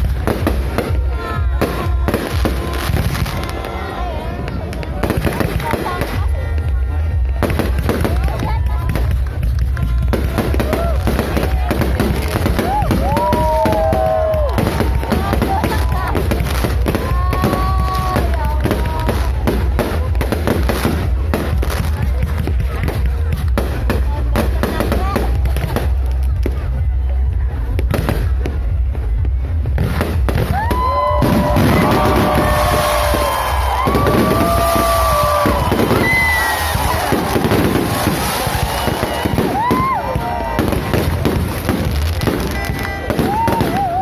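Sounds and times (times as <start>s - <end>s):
fireworks bangs and crackles: 0.0s - 44.0s.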